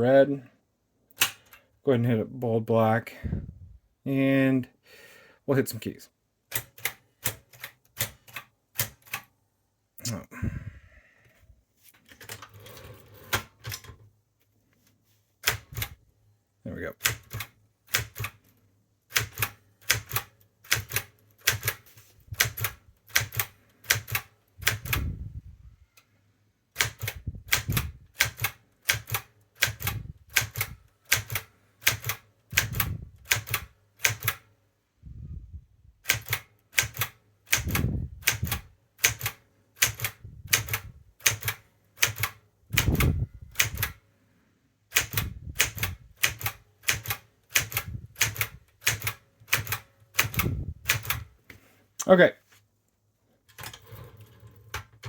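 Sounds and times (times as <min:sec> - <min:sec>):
typewriter typebars striking: 0:17.0 - 0:18.4, 0:26.8 - 0:34.4, 0:36.1 - 0:44.0, 0:44.9 - 0:51.3.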